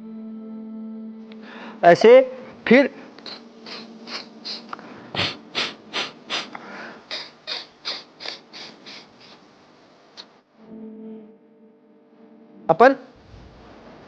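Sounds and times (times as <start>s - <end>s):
forceful nose snorting: 3.2s - 9.4s.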